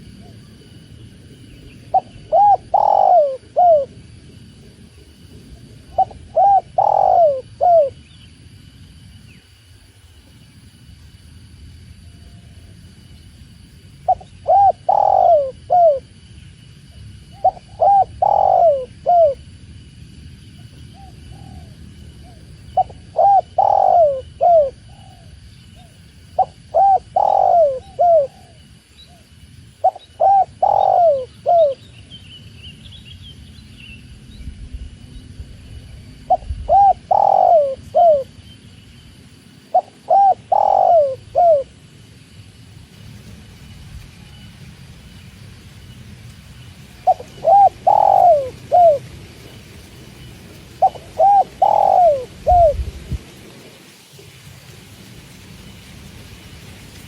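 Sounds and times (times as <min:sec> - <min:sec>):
dove cooing: 0:01.8 - 0:04.0, 0:05.5 - 0:08.0, 0:14.0 - 0:16.1, 0:17.3 - 0:19.4, 0:20.9 - 0:29.2, 0:29.8 - 0:31.8, 0:36.2 - 0:38.4, 0:39.7 - 0:41.8, 0:46.9 - 0:49.1, 0:50.6 - 0:52.9.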